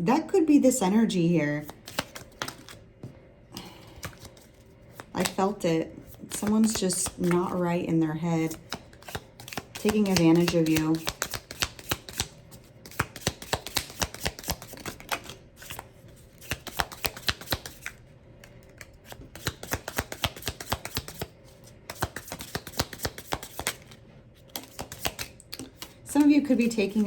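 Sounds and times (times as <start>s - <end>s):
clothes dryer hum: 0.0s - 11.2s, 17.7s - 27.0s
cards being shuffled: 1.6s - 2.8s, 3.6s - 7.6s, 8.5s - 27.0s.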